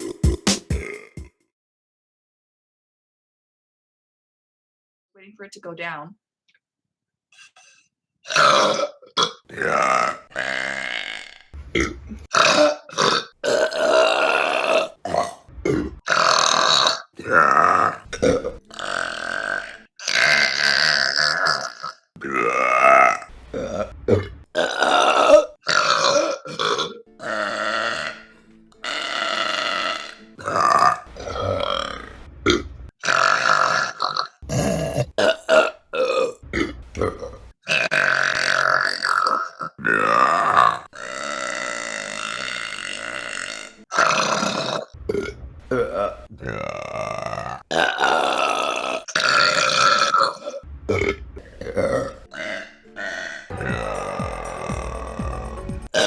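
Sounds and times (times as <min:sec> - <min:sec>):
woman burping: 0:00.1 - 0:01.2, 0:38.0 - 0:55.2.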